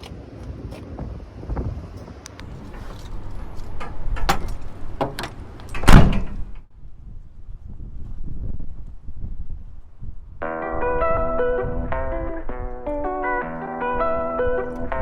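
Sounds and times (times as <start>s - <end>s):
clicks and knocks: 2.4s - 6.6s
door slamming shut: 2.6s - 6.7s.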